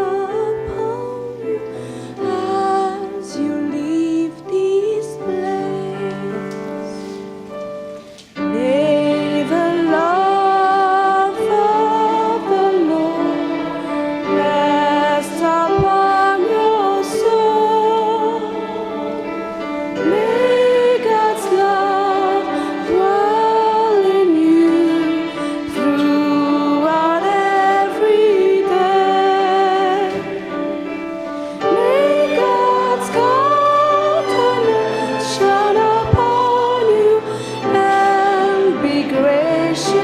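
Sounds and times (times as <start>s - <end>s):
long held accompanying notes: 0.0s - 40.0s
voices singing slow melody: 8.2s - 40.0s.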